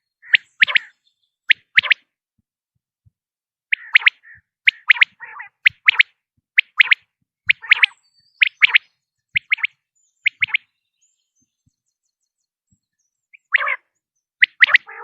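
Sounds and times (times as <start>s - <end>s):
quail calling: 0.0s - 2.1s, 3.7s - 10.7s, 13.3s - 15.0s.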